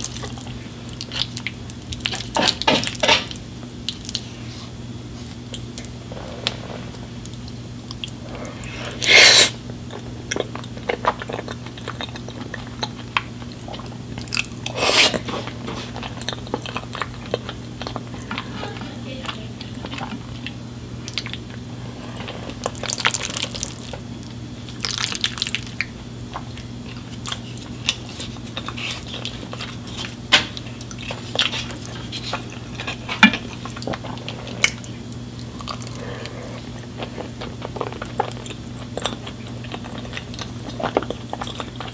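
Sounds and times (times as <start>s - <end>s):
low electrical hum: 0.0s - 41.9s
crunchy chewing: 3.8s - 18.5s, 19.8s - 41.9s
wet mouth clicks: 9.0s - 9.6s, 14.7s - 15.2s.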